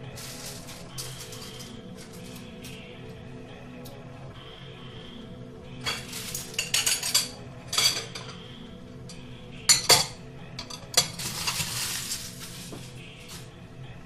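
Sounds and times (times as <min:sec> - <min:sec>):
faint background music: 0:00.0 - 0:14.0
cutlery clinking against dishes: 0:05.8 - 0:08.4, 0:09.7 - 0:11.8.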